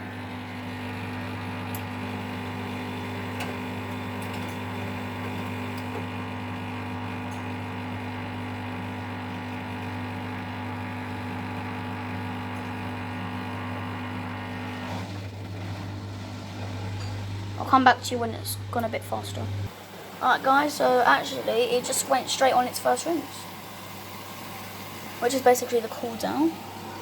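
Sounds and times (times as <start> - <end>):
washing machine drain pump humming: 0.0 - 27.0.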